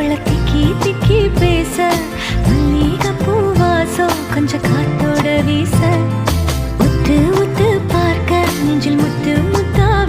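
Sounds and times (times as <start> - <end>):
song with bass and beat: 0.0 - 10.0.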